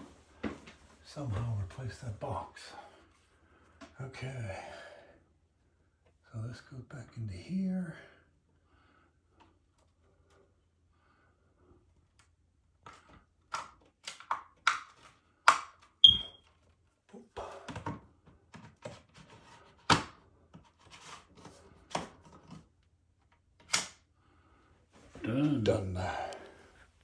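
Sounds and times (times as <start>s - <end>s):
smoke detector chirp: 16.0s - 16.4s.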